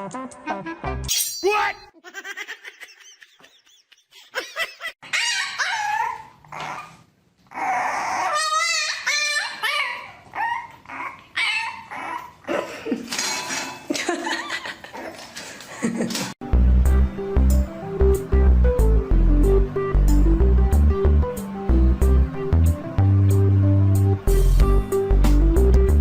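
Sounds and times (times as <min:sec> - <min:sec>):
dog vocalising in pitched calls: 0:05.0 - 0:12.4.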